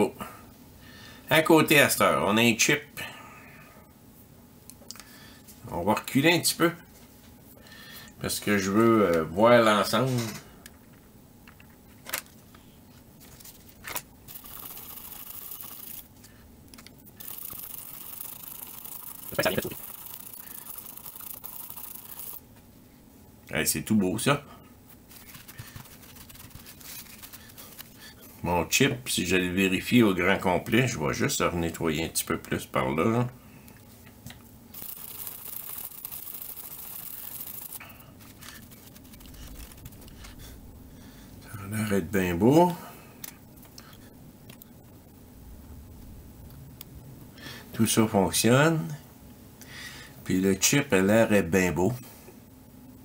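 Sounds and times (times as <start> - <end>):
brush scrubbing circuit board: 14.3 - 16.1, 17.2 - 22.4, 25.1 - 28.0, 34.7 - 40.3.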